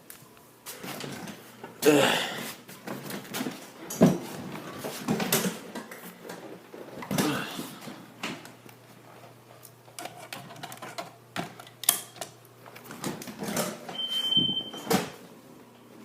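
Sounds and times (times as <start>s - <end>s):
clicks and knocks of handling things: 2.8s - 14.0s.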